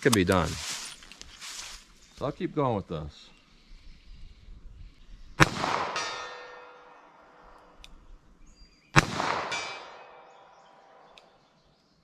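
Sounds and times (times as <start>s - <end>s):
revolver shots: 5.4s - 7.0s, 9.0s - 10.9s
metallic ring of steel target: 5.4s - 7.5s, 9.0s - 11.1s.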